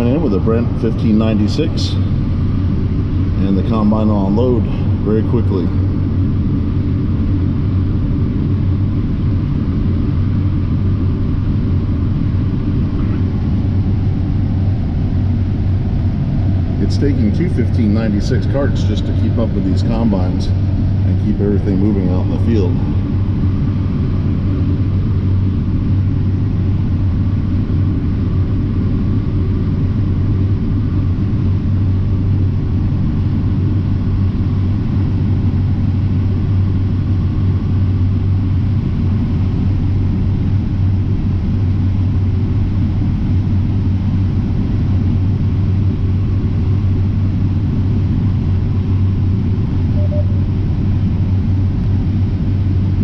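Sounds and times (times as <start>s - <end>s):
combine harvester droning: 0.0s - 31.1s, 48.0s - 51.3s.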